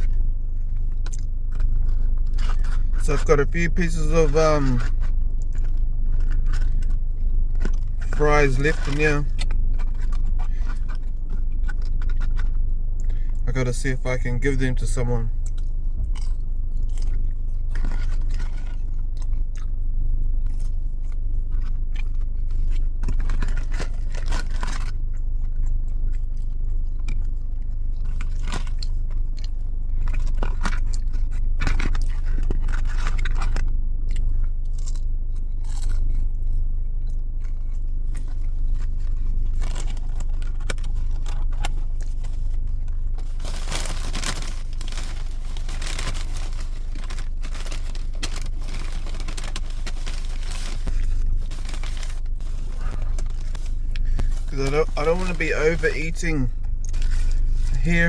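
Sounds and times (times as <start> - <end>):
chewing and crunching food: 0.0 - 58.0
steady low hum: 0.0 - 58.0
food packaging rustling: 37.8 - 58.0.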